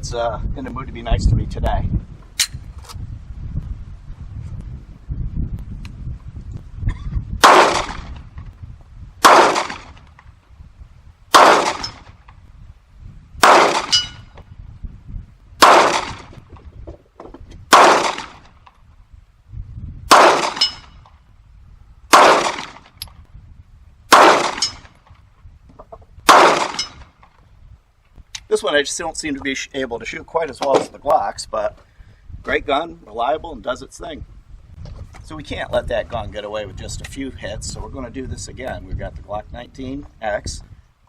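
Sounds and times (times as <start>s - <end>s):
pistol shots: 7.4s - 8.2s, 9.2s - 10.0s, 11.3s - 12.1s, 13.4s - 14.2s, 15.6s - 16.3s, 17.7s - 18.5s, 20.1s - 21.0s, 22.1s - 22.9s, 24.1s - 25.0s, 26.2s - 27.1s.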